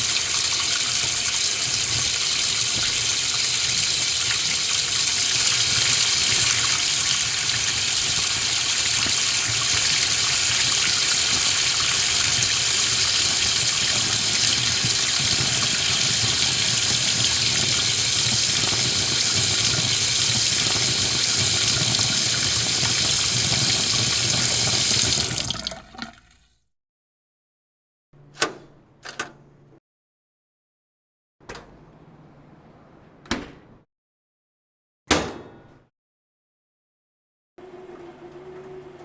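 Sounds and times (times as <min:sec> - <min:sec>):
running water: 0:00.0 - 0:26.4.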